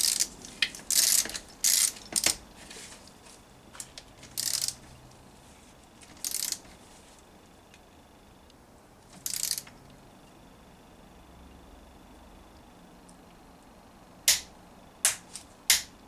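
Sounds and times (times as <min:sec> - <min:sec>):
torque wrench ratchet clicking: 0:00.0 - 0:00.3, 0:00.9 - 0:02.4, 0:04.4 - 0:04.8, 0:06.2 - 0:06.6, 0:09.2 - 0:09.7.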